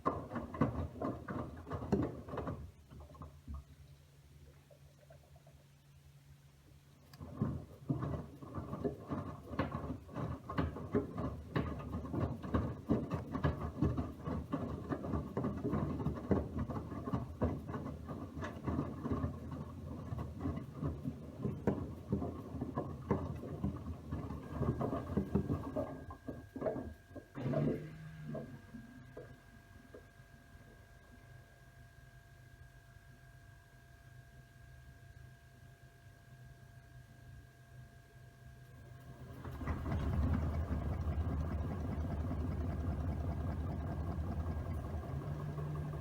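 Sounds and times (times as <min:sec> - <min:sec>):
laundry tumbling in washing machine: 0:00.0 - 0:03.4, 0:07.2 - 0:28.7, 0:38.8 - 0:46.0
faint steady whine: 0:23.4 - 0:46.0
low hum: 0:38.8 - 0:46.0.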